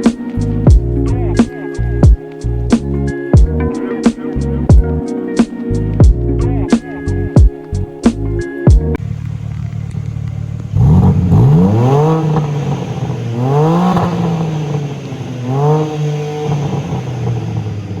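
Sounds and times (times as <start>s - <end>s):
car engine idling and revving: 8.8s - 18.0s.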